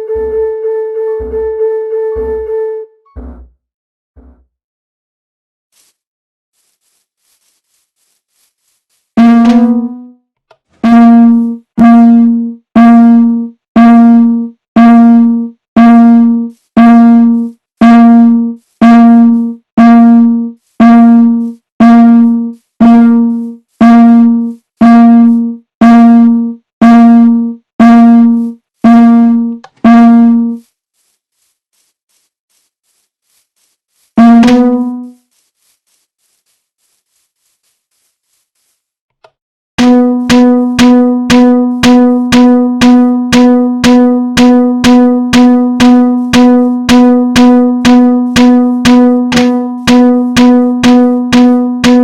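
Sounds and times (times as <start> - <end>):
fire alarm horn blasts: 9.2 - 10.1, 10.8 - 30.6, 34.2 - 35.2, 39.8 - 52.0.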